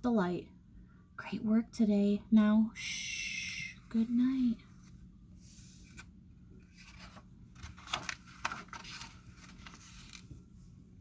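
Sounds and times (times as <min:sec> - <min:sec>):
rustling and scraping: 0:04.6 - 0:10.6.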